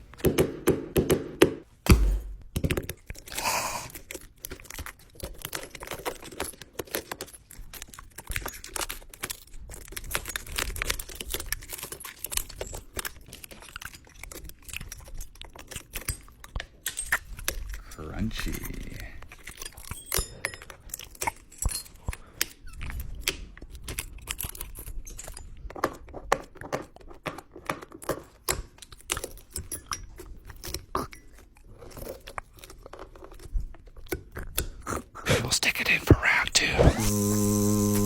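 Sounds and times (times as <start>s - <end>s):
heavy thump: 1.9s - 2.5s.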